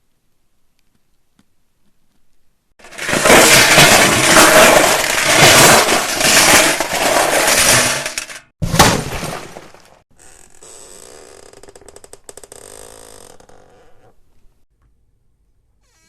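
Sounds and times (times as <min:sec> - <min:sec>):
things crashing and breaking: 0:02.8 - 0:10.0.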